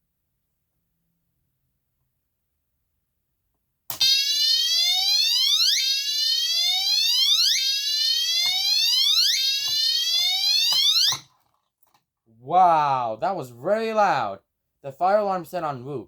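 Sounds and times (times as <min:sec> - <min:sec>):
alarm click: 0:03.9 - 0:04.6, 0:08.3 - 0:11.3
fire alarm whoop tone: 0:04.0 - 0:11.2.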